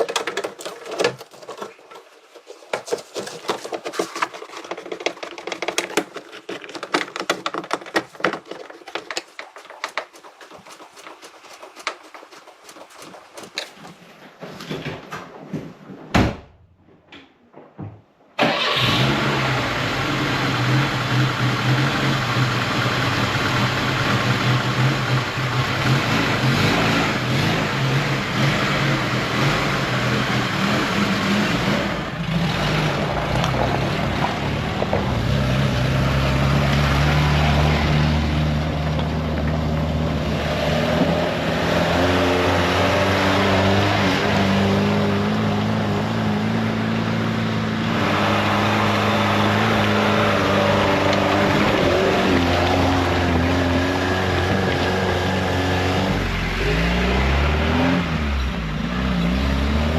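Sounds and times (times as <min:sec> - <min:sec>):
car engine starting and revving: 0:18.4 - 0:59.9.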